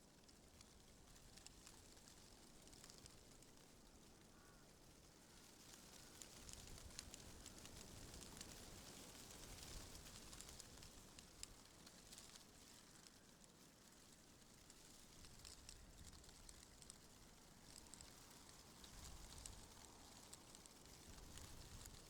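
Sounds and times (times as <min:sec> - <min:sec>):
wind rustling leaves: 0:00.0 - 0:22.0
leaves crackling: 0:00.2 - 0:22.0.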